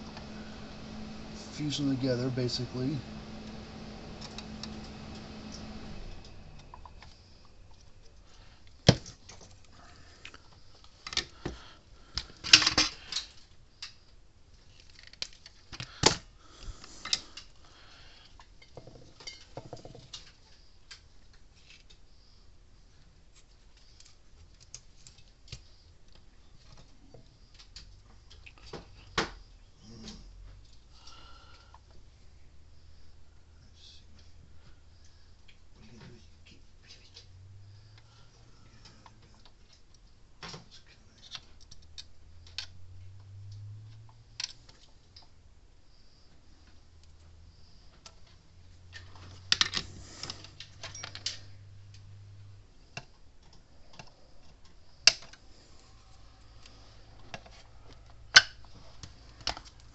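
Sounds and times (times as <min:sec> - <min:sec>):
small tools clicking and clattering: 0:12.2 - 0:14.0, 0:18.4 - 0:22.0.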